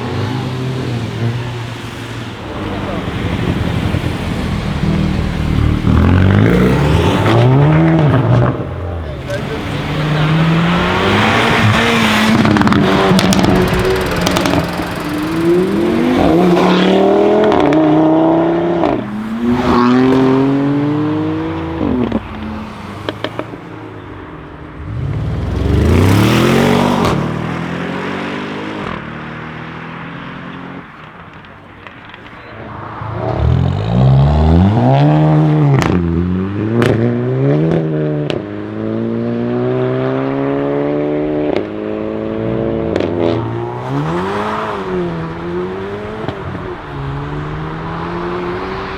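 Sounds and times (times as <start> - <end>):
car engine accelerating hard: 0.0 - 30.8, 31.8 - 48.9
exhaust crackles and pops: 11.2 - 17.9, 30.9 - 34.1.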